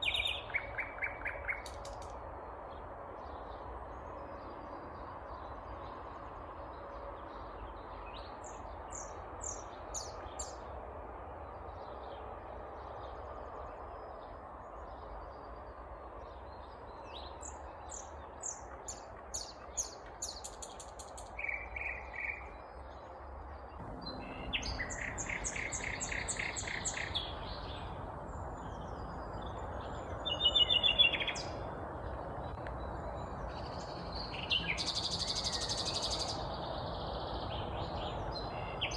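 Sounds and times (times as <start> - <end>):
nightingale singing: 0.0 - 2.1, 23.8 - 31.7, 32.4 - 38.9
steady background noise: 0.0 - 38.9.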